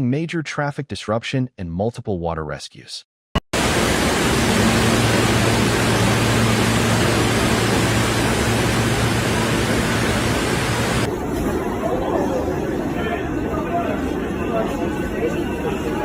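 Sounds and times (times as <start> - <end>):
rushing water: 3.6 - 11.1
low hum: 3.6 - 11.4.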